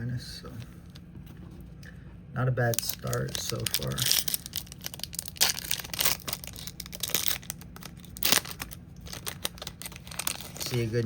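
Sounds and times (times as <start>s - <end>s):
plastic wrapper crinkling and tearing: 2.6s - 11.0s.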